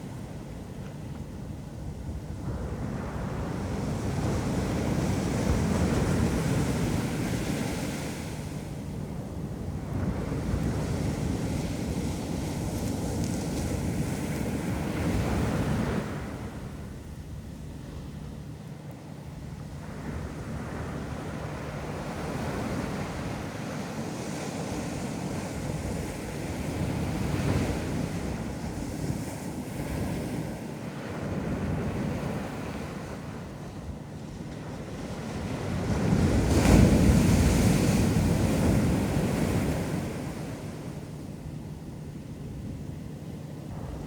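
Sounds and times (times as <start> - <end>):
ocean waves washing onto beach: 19.7 - 41.4
wind buffeting microphone: 42.6 - 44.0.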